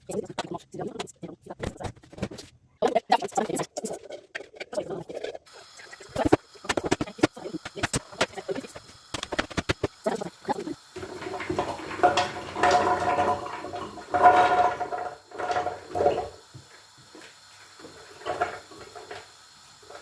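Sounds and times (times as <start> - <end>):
water pouring into container: 9.9 - 20.0
kitchen handling sounds: 11.0 - 16.5, 17.1 - 19.3.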